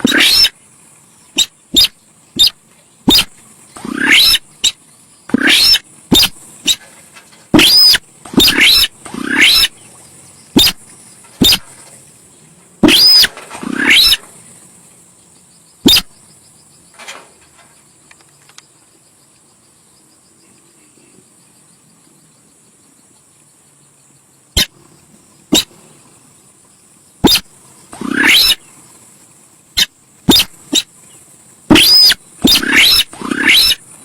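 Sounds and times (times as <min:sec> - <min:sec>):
harsh bird calls: 0:00.0 - 0:14.7, 0:15.8 - 0:16.3, 0:27.2 - 0:29.0, 0:29.8 - 0:34.0.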